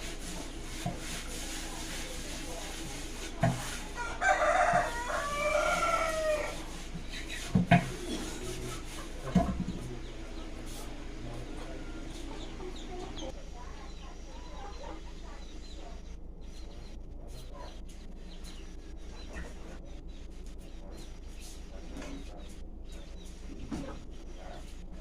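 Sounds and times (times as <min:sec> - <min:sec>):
rooster crowing: 0:04.0 - 0:06.8.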